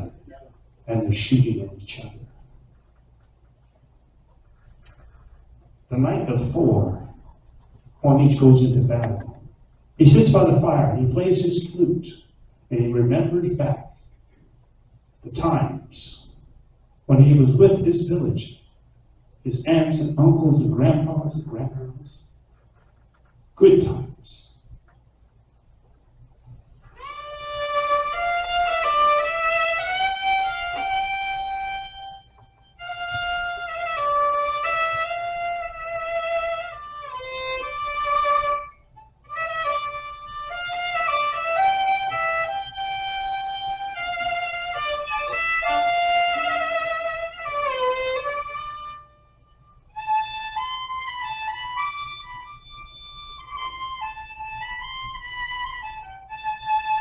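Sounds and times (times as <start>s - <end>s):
solo violin melody: 26.9s - 57.0s.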